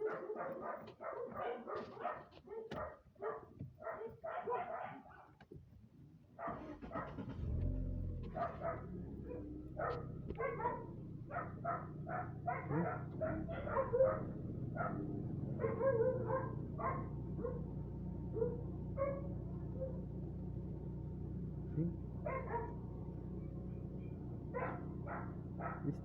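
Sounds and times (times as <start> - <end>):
dog barking: 0.0 - 5.4, 6.4 - 17.7, 18.3 - 20.1, 21.7 - 26.0
car engine idling: 6.5 - 26.0.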